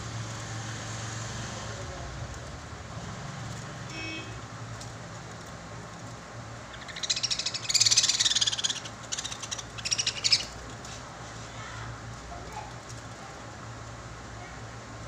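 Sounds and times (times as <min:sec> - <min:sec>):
lovebirds chattering: 0:06.6 - 0:10.7.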